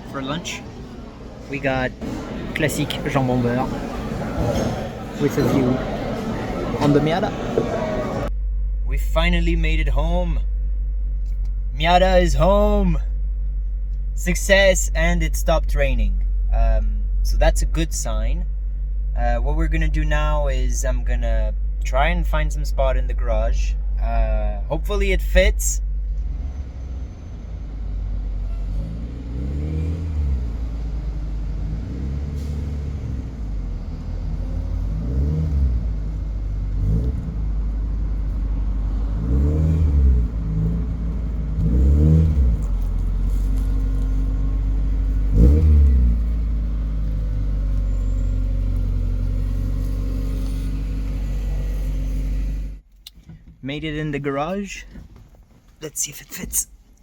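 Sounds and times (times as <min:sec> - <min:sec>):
car engine revving: 0:01.5 - 0:14.8, 0:25.8 - 0:52.8.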